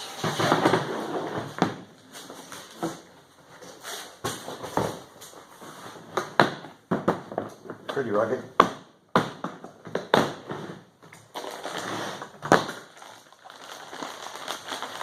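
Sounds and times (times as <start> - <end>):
clicks and knocks of hard plastic: 6.1 - 11.3.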